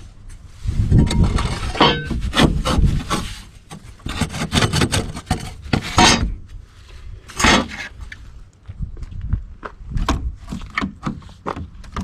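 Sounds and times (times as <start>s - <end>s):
rough scraping and rubbing: 0.4s - 8.3s.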